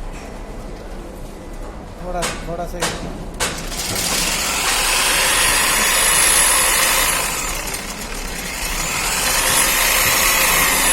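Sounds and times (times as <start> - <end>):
core drill grinding concrete: 3.4 - 10.9.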